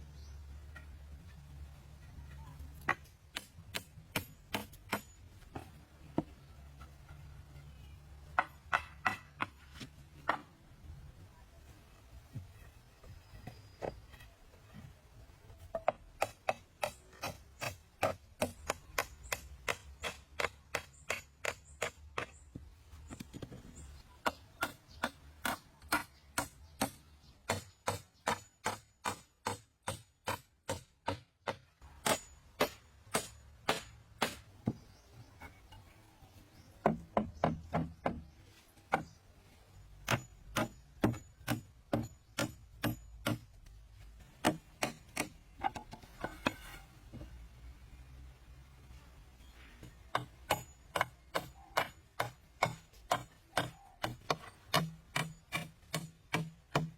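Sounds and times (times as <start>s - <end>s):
hand tool striking wood: 8.4s - 10.5s, 15.8s - 22.4s, 24.2s - 34.9s, 40.0s - 43.6s, 44.4s - 47.3s, 50.1s - 56.9s.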